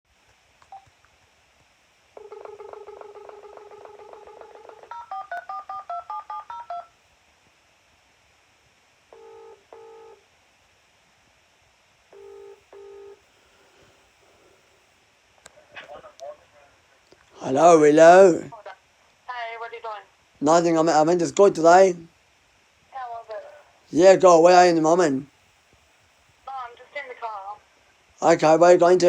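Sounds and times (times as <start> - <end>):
keypad tones: 2.2 - 6.9
phone dial tone: 2.2 - 6.9, 9.1 - 10.2, 12.1 - 13.2
phone ringing tone: 2.2 - 7.0, 9.1 - 10.2, 12.1 - 13.2.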